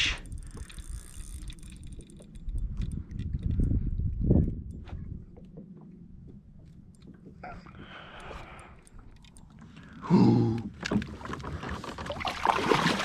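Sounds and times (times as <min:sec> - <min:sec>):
water splashing around kayak: 0:10.8 - 0:13.0.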